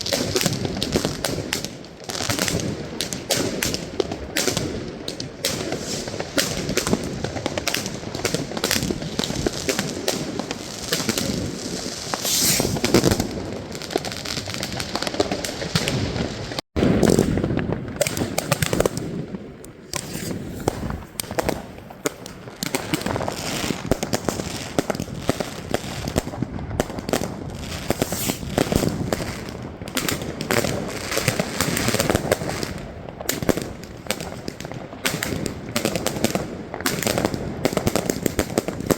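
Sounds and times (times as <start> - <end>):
fireworks and firecrackers banging: 0.0 - 38.9.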